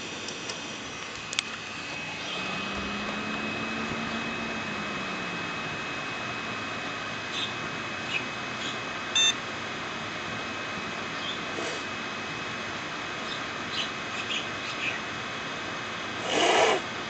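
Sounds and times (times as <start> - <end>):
high whine: 0.0 - 13.0
computer fans whirring: 0.0 - 17.0
low hum: 0.7 - 9.4.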